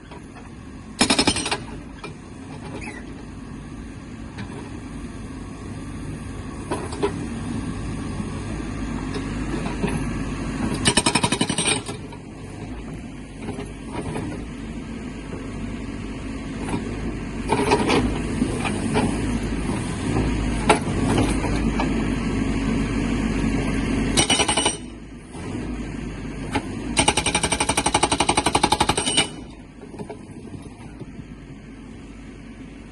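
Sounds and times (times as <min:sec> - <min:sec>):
diesel engine running: 0:00.0 - 0:32.9
hydraulic breaker hammering: 0:01.0 - 0:01.7, 0:24.2 - 0:25.0, 0:27.0 - 0:29.5.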